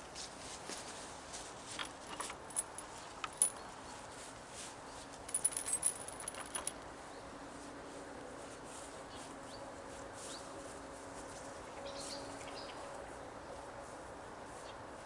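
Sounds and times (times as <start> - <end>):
light metallic clicks and jingling: 1.7 - 3.8, 5.1 - 6.9.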